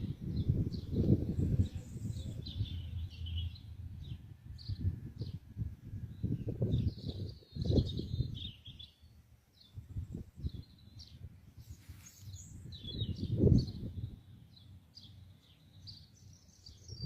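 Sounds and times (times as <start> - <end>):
gusty low rumbling: 0.0 - 8.6, 12.4 - 14.2
small birds chirping: 0.0 - 17.0.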